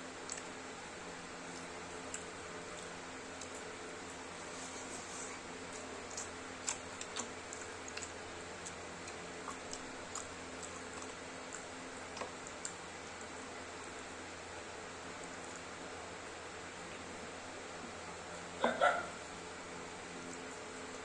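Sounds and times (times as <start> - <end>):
chewing clicks and smacks: 0.2 - 0.6, 1.4 - 4.4, 5.6 - 13.5, 15.0 - 15.9.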